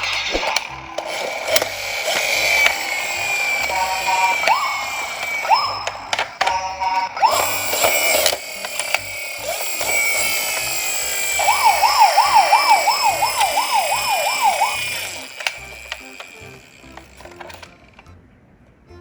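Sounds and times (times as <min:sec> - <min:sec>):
toy electronic sirens wailing: 0:00.0 - 0:18.0
siren yelping: 0:02.0 - 0:15.8.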